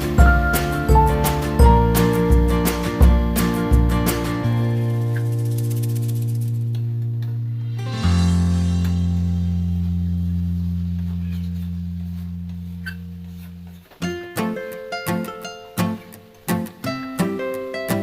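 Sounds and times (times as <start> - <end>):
quick plucked notes: 0.0 - 18.0
deep plucked string note: 6.7 - 13.9.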